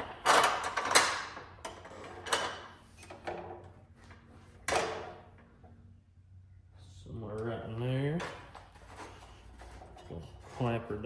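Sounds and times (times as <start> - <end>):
metal pipe clunks and scrapes: 8.2 - 11.0.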